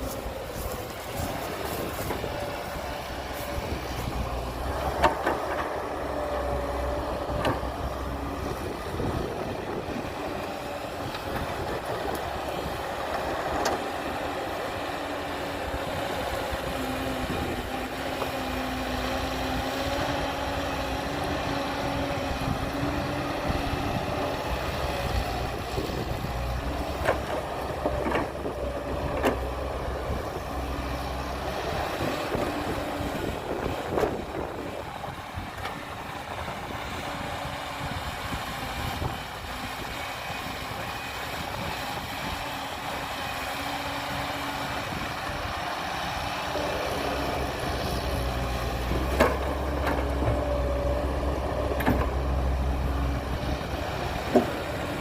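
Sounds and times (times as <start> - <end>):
heavy diesel machinery running: 0.0 - 55.0.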